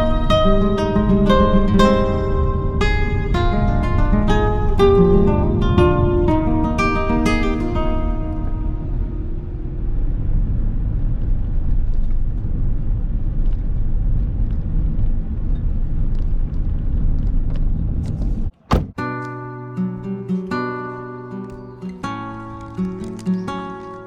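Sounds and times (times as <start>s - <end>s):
guitar music: 0.0s - 10.0s, 19.0s - 24.0s
car road and engine rumble: 0.0s - 19.0s
sharp knock: 18.6s - 19.0s.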